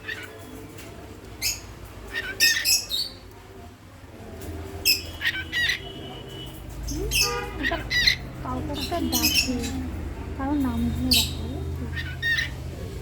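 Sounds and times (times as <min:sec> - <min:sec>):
bird squawking and chirping: 0:00.0 - 0:00.5, 0:01.4 - 0:03.2, 0:04.8 - 0:10.0, 0:10.6 - 0:12.8.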